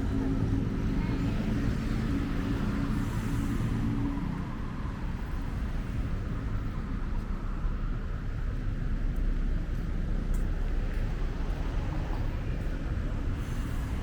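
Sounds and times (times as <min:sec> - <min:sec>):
low rumble of traffic: 0:00.0 - 0:14.0.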